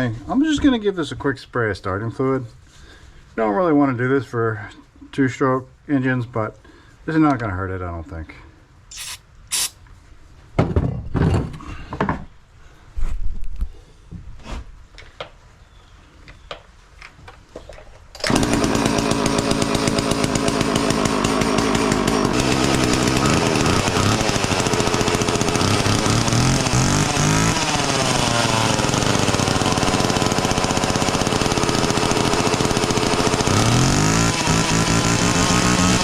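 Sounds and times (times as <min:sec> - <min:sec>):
chainsaw engine revving: 0:18.2 - 0:36.0.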